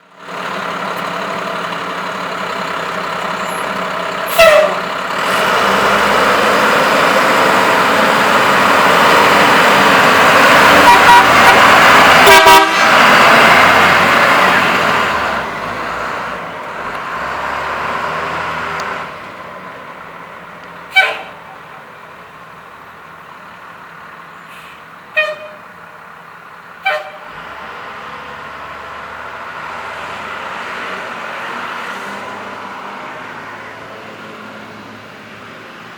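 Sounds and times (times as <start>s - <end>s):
diesel bus engine driving past: 0.0s - 35.9s
air horn blasts: 4.3s - 4.8s, 10.7s - 13.1s, 20.9s - 21.4s, 25.2s - 25.7s, 26.8s - 27.3s.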